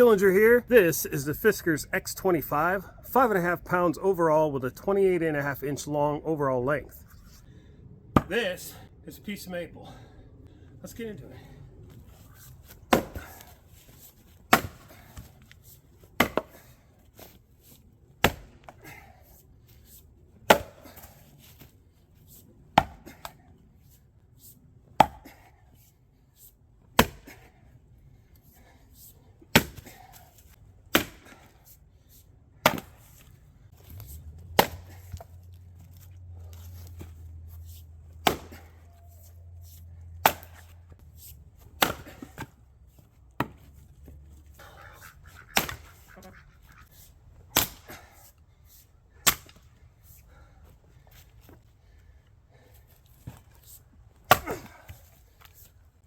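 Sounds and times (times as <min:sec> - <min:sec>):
axe chopping firewood: 0:08.1 - 0:08.5, 0:12.7 - 0:13.6, 0:14.5 - 0:15.4, 0:16.2 - 0:16.8, 0:18.2 - 0:19.1, 0:20.5 - 0:21.3, 0:22.8 - 0:23.4, 0:25.0 - 0:25.5, 0:27.0 - 0:27.6, 0:29.5 - 0:31.7, 0:32.6 - 0:35.6, 0:38.1 - 0:42.6, 0:43.4 - 0:43.7, 0:45.5 - 0:46.0, 0:47.5 - 0:48.3, 0:49.2 - 0:49.7, 0:54.2 - 0:55.6.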